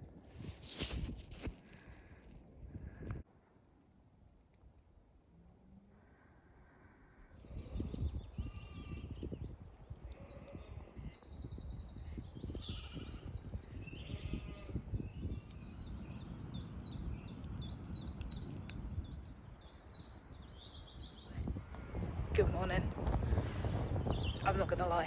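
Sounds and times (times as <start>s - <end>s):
wind buffeting microphone: 0.0s - 3.3s, 7.3s - 25.0s
small birds singing: 6.4s - 25.0s.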